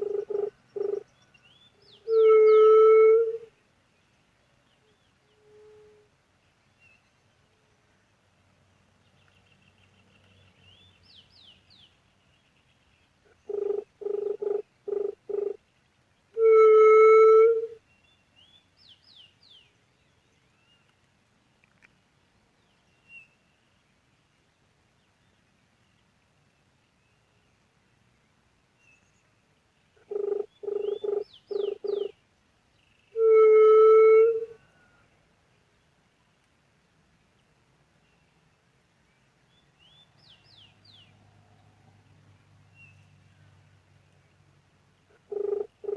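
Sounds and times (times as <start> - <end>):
dove hooting: 0.0 - 1.0, 2.0 - 3.5, 13.5 - 15.6, 16.4 - 17.8, 30.0 - 32.2, 33.2 - 34.7, 45.1 - 45.9
faint birdsong chirps: 0.0 - 16.6, 17.3 - 45.9.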